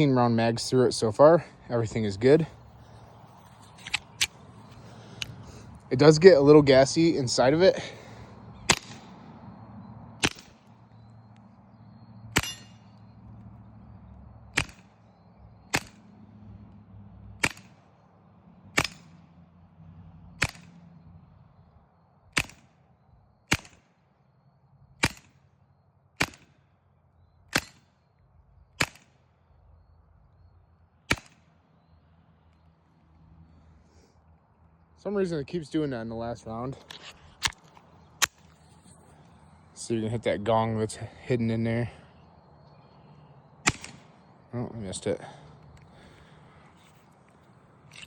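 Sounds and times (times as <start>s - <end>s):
suppressed pistol shots: 8.6s - 9.2s, 10.2s - 10.7s, 12.3s - 12.9s, 14.5s - 15.0s, 15.6s - 16.1s, 17.4s - 17.8s, 18.7s - 19.2s, 20.3s - 20.8s, 22.3s - 22.8s, 23.5s - 23.9s, 25.0s - 25.4s, 26.2s - 26.6s, 27.5s - 27.9s, 28.8s - 29.2s, 31.1s - 31.5s, 43.6s - 44.2s.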